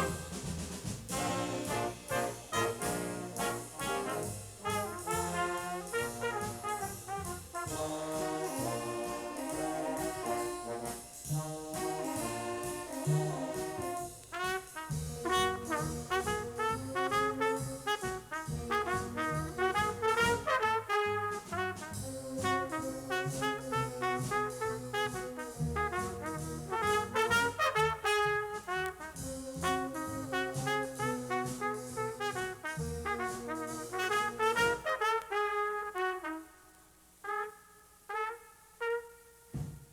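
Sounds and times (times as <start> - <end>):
big band jazz: 0.0 - 36.5, 37.2 - 39.9
trumpets and trombones: 0.0 - 39.9.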